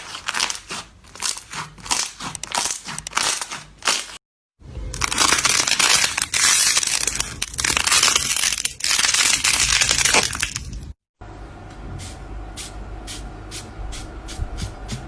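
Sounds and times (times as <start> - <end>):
slime crackling by hand: 0.0 - 4.2, 5.0 - 10.9.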